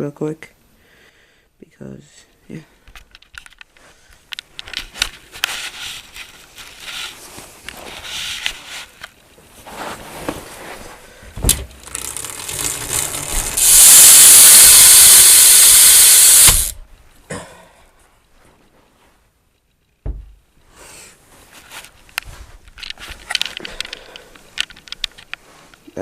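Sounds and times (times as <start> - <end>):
thump: 11.4 - 11.7, 20.0 - 20.4
bicycle hub buzzing: 11.6 - 16.8.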